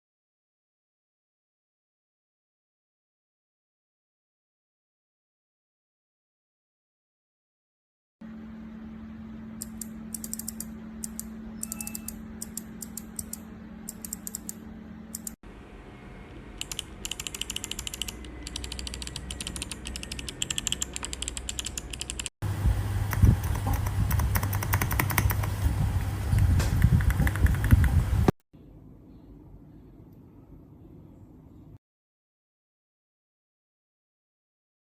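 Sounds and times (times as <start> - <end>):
steady low hum: 8.2 - 31.8
clicky keyboard typing: 9.6 - 15.4, 16.6 - 22.3, 23.1 - 25.6, 26.8 - 27.9.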